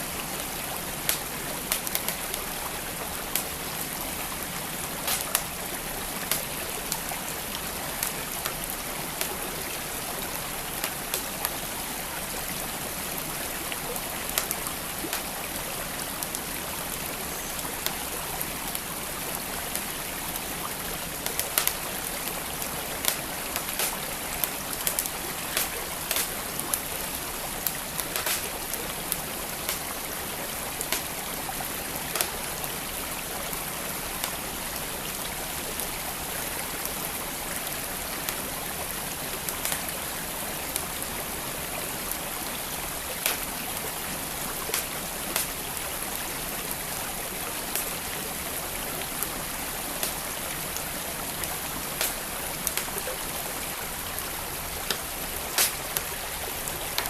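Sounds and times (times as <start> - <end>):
stream flowing: 0.0 - 57.0
wood fire crackling and popping: 0.2 - 35.9, 36.5 - 41.0, 42.8 - 57.0.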